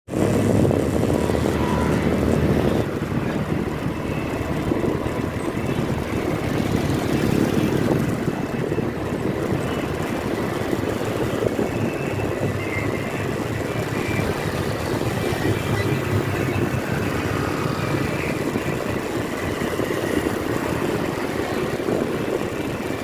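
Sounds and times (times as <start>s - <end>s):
vehicle road noise: 0.1s - 23.0s.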